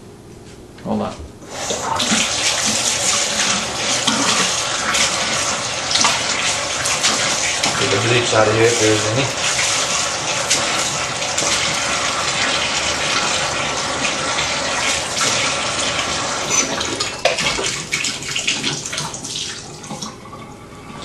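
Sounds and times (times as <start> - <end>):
tap water splashing into plastic: 1.8 - 7.9.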